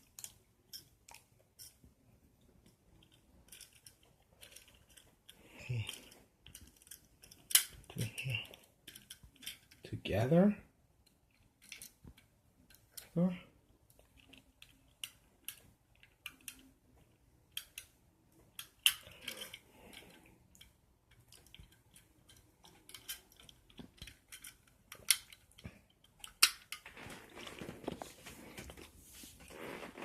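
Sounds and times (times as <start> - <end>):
plastic bricks clicking and clattering: 3.0 - 9.8, 18.5 - 28.0.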